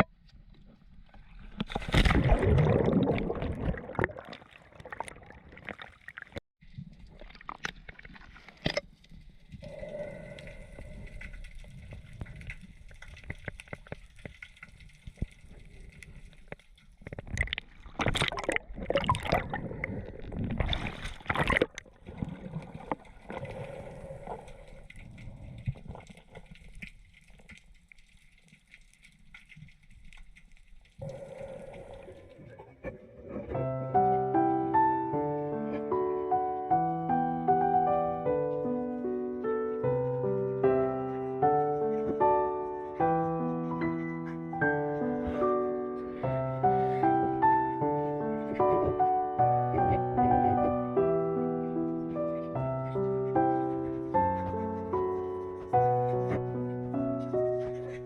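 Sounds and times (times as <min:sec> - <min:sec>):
water sloshing and gurgling: 0:00.0 - 0:34.3
water splashing: 0:01.1 - 0:09.5, 0:10.7 - 0:33.6.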